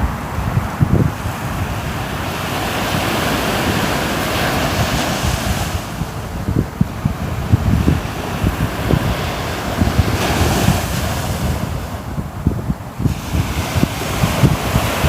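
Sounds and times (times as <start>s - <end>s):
sea waves surging: 0.0s - 15.0s
wind buffeting microphone: 0.0s - 15.0s.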